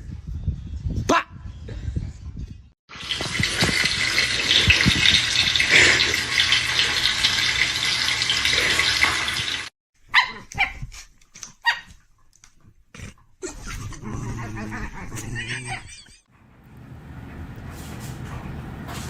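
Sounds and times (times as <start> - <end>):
dog barking: 10.1 - 10.9, 11.6 - 12.0.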